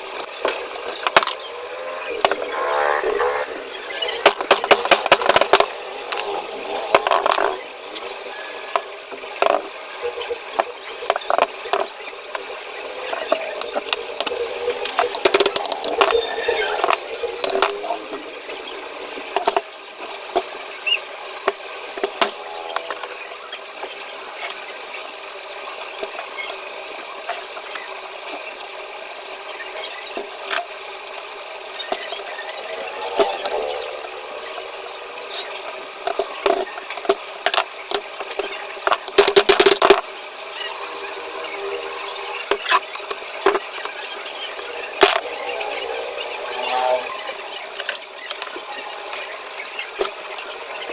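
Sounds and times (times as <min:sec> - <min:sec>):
knocks and scraping: 0:00.0 - 0:08.1, 0:08.7 - 0:18.3, 0:35.3 - 0:40.0
steady hum: 0:00.0 - 0:24.9.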